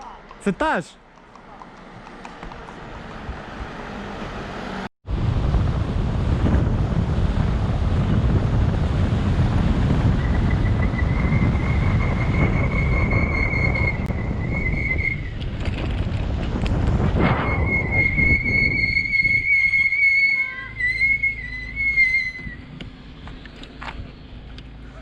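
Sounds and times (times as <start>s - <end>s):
wind rumble on microphone: 2.6s - 4.3s, 5.1s - 25.0s
high whistling tone: 10.2s - 15.4s, 17.3s - 22.7s.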